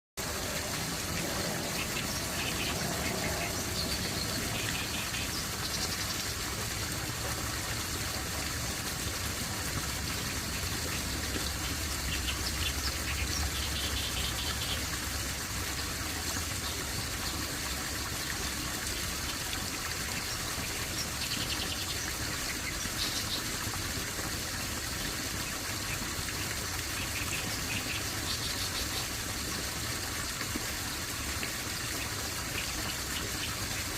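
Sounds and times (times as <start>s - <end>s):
running water: 0.2s - 33.9s
birds chirping: 0.4s - 6.3s.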